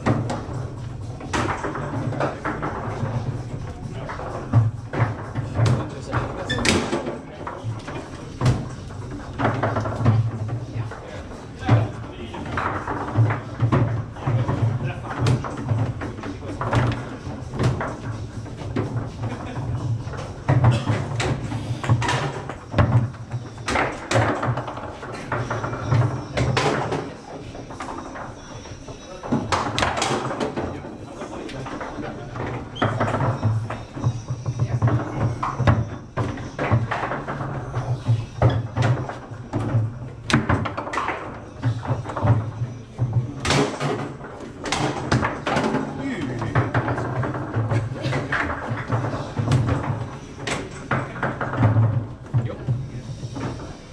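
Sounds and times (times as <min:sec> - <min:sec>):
foosball ball knocks and clacks: 0:00.0 - 0:53.9.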